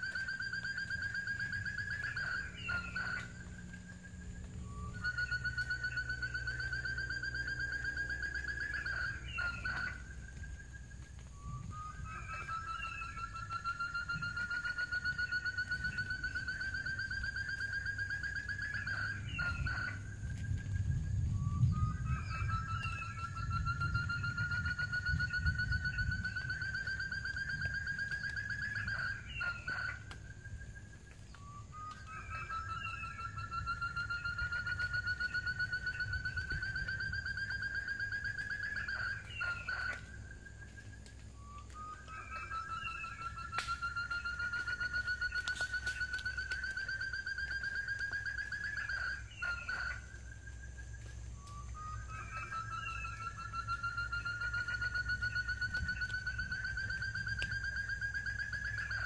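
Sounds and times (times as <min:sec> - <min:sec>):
quail trilling: 0:00.0 - 0:10.7, 0:11.4 - 0:20.5, 0:21.6 - 0:59.0
low rumble: 0:19.2 - 0:45.2.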